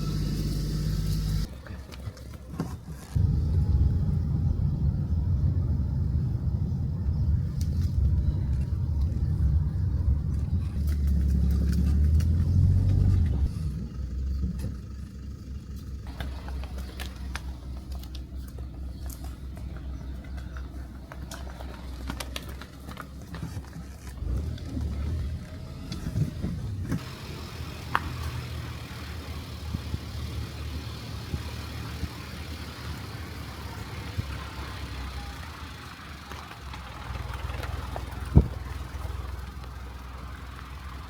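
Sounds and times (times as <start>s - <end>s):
road and air noise hiss: 0.0s - 2.0s, 26.6s - 41.0s
car engine rumbling: 0.0s - 41.0s.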